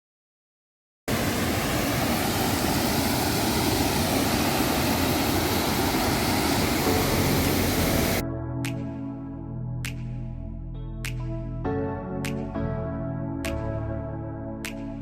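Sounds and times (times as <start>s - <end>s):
waterfall roaring: 1.1s - 8.2s.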